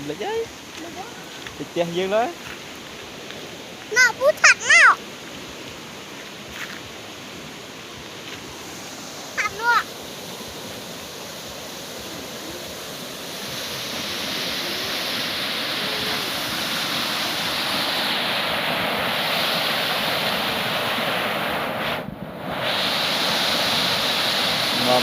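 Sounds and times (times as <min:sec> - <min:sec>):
water pouring down waterfall: 0:09.4 - 0:21.2, 0:22.7 - 0:25.0.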